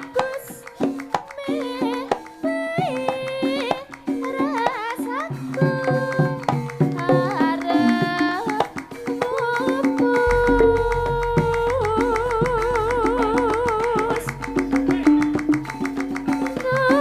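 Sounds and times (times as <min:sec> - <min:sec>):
deep low tone: 0:10.2 - 0:15.9
held melody note with vibrato: 0:10.2 - 0:16.9
struck and plucked notes: 0:10.2 - 0:17.0.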